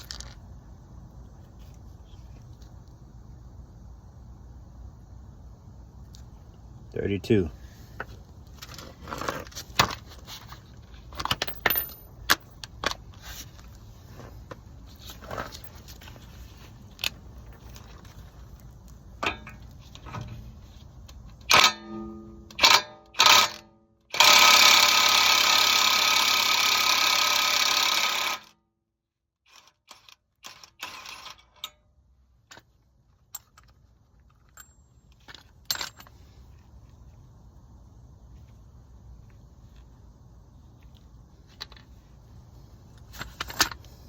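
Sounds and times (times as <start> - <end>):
metal tools clinking: 11.0 - 12.7, 33.3 - 36.2
impact wrench running: 22.6 - 28.5.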